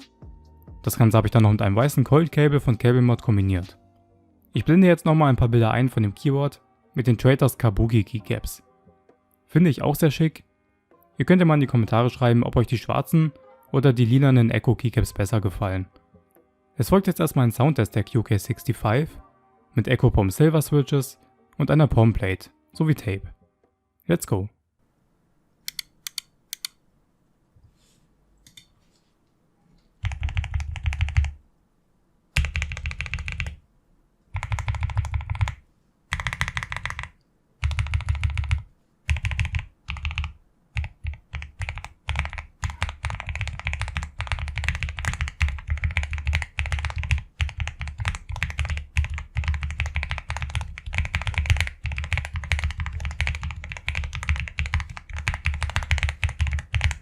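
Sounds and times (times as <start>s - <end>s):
mechanical keyboard typing: 30.0s - 31.4s, 32.4s - 33.6s, 34.4s - 57.0s.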